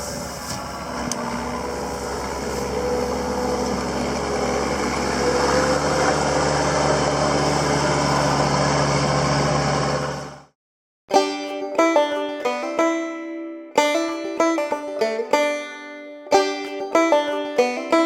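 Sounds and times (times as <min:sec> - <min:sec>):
skid steer engine running: 0:00.0 - 0:10.6.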